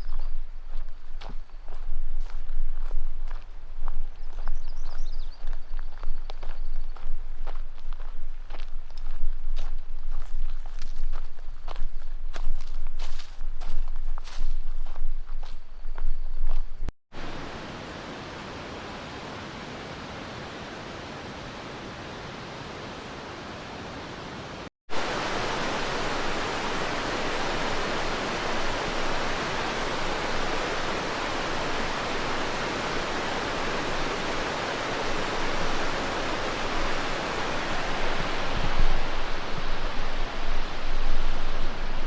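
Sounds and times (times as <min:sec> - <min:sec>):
river rushing: 0:17.1 - 0:42.0.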